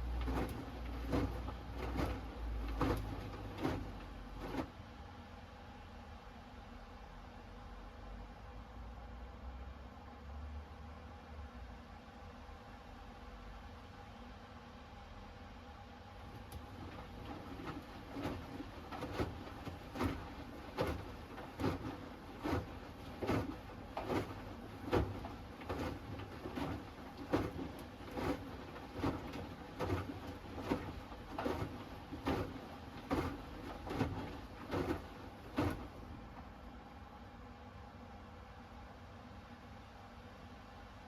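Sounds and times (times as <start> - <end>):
laundry thumping in drum: 0.0 - 4.7, 16.4 - 36.0
washing machine drum tumbling: 0.0 - 4.7, 16.3 - 36.5.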